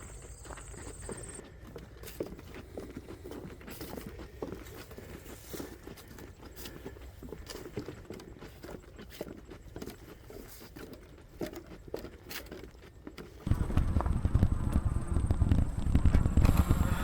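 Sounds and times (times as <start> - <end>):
footsteps on a trail: 0.0 - 17.0
loud low rumble: 13.5 - 17.0.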